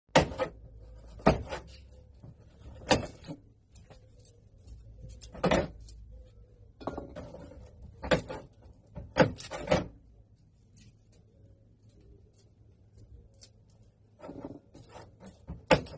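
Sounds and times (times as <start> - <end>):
objects knocking and clunking: 0.1 - 10.2, 14.0 - 15.9.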